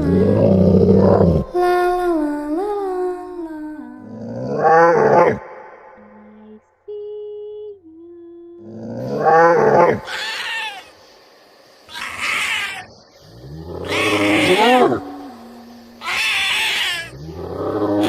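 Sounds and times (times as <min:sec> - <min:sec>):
cat yowling: 0:10.0 - 0:10.9, 0:11.9 - 0:12.9, 0:13.8 - 0:15.0, 0:16.0 - 0:17.2
cat hissing: 0:10.0 - 0:11.1, 0:11.8 - 0:15.2, 0:15.8 - 0:17.2.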